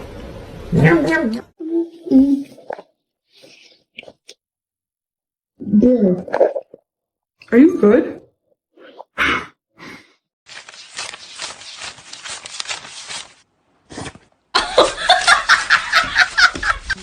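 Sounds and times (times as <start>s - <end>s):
person laughing hard: 14.6s - 17.0s.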